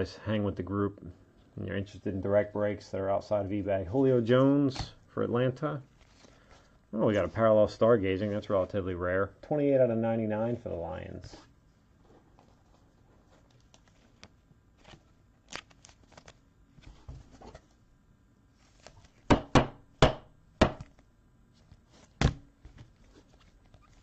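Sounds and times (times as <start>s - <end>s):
cards shuffling: 12.0s - 17.8s, 18.6s - 19.3s, 20.8s - 24.0s.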